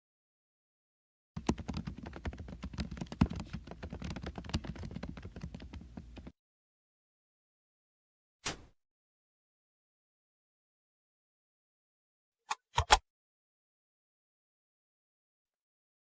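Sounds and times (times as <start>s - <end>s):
fast typing on computer keyboard: 1.4s - 6.3s.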